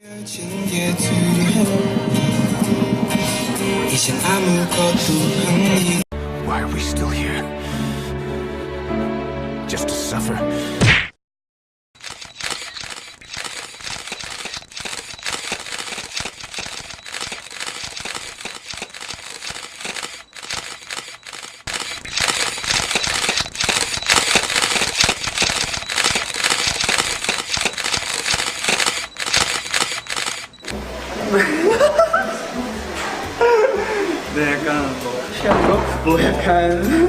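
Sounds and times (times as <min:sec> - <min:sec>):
camera shutters clicking: 0:12.0 - 0:30.6.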